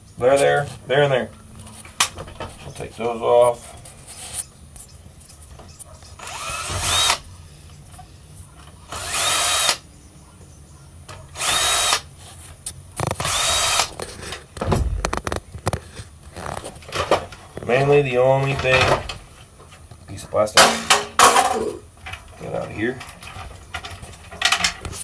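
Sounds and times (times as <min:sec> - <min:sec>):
power drill whining: 0:06.2 - 0:07.2, 0:08.9 - 0:09.8, 0:11.4 - 0:12.0, 0:13.2 - 0:13.9
low thump: 0:14.6 - 0:15.5
knocks: 0:14.6 - 0:15.6.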